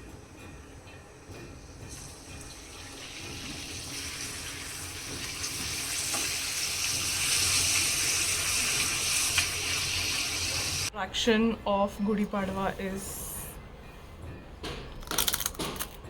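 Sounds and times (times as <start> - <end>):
water running from tap: 1.8 - 10.9.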